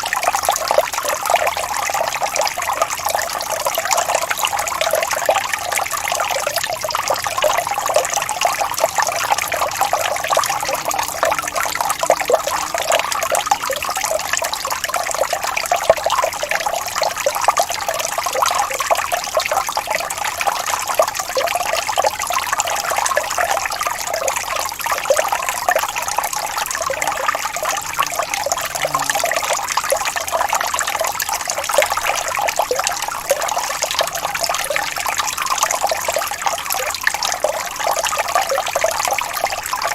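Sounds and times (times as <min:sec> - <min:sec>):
water trickling and splashing: 0:00.0 - 0:39.9.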